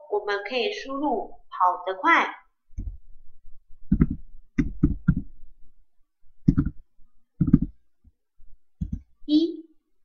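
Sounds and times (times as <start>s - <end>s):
computer keyboard typing: 6.5s - 6.8s.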